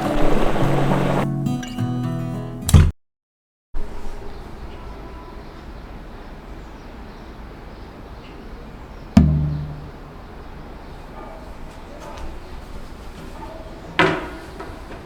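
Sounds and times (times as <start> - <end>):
faint steady background noise: 3.8 - 15.0
sharp knock with low ringing: 9.2 - 10.3.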